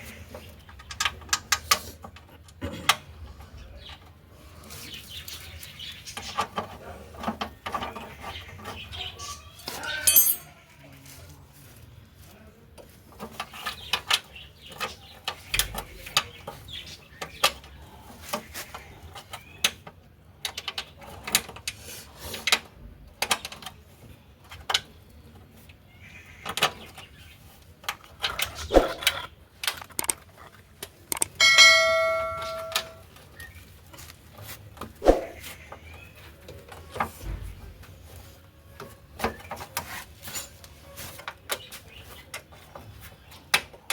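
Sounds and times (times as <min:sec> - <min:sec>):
metal tools clicking and clanking: 0:09.8 - 0:10.5, 0:31.1 - 0:33.1
bell-like metallic ring: 0:31.4 - 0:33.0.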